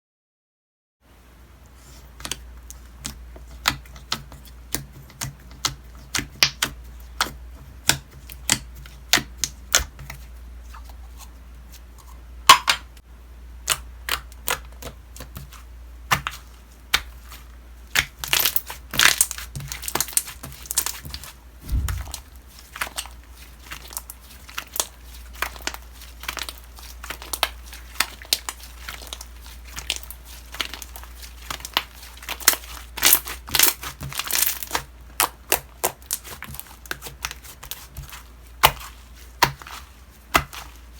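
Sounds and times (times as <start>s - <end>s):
low thump: 21.6s - 22.6s.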